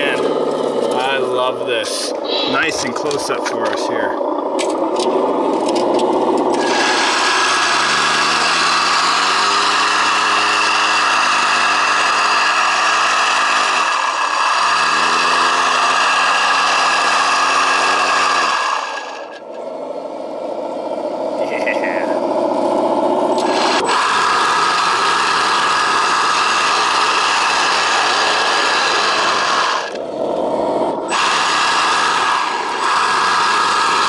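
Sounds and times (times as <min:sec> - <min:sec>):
ticking: 0:02.1 - 0:07.0
motor buzz with rising whine: 0:04.6 - 0:34.0.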